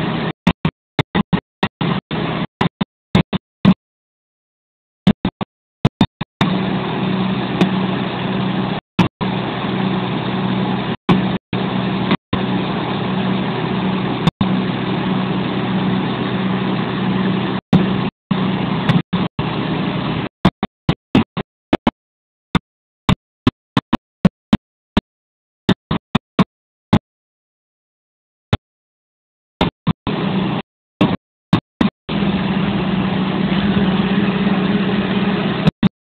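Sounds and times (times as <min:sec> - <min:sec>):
diesel engine humming: 0:32.1 - 0:35.7.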